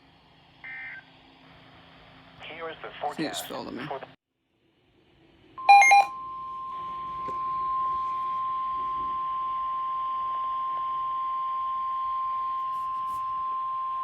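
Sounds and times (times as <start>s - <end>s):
high beeps: 5.6s - 6.1s
steady piercing alarm tone: 5.6s - 14.0s.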